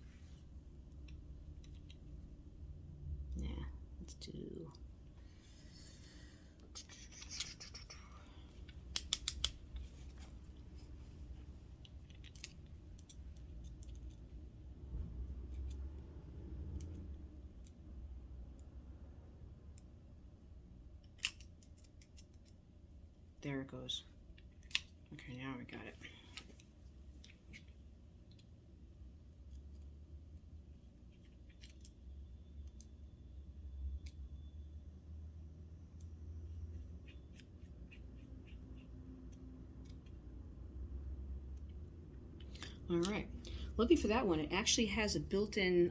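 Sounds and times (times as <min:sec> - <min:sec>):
low steady hum: 0:00.0 - 0:45.9
metal tweezers clicking on parts: 0:08.6 - 0:09.8, 0:11.8 - 0:14.2.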